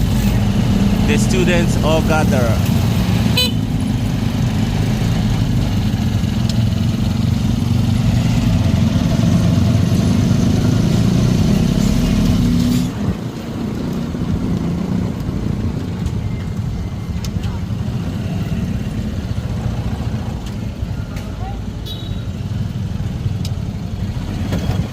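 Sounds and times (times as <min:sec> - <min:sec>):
motorcycle engine running: 0:00.0 - 0:12.2.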